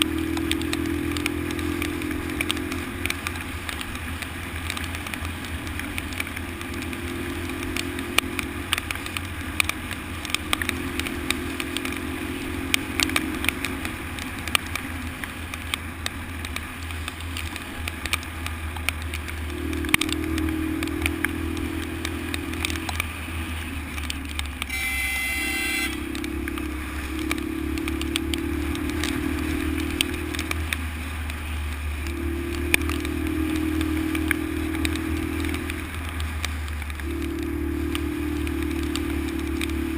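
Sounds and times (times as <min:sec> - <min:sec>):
motorcycle engine running: 0:00.0 - 0:39.9
short beep: 0:24.7 - 0:26.0.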